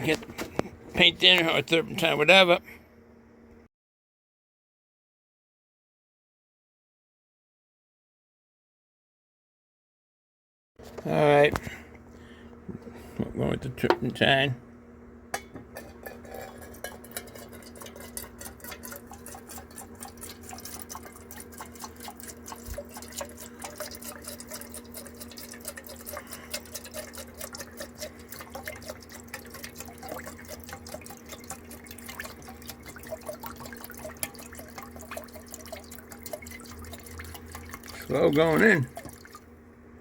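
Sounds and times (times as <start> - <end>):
liquid trickling and dripping: 15.8 - 39.5.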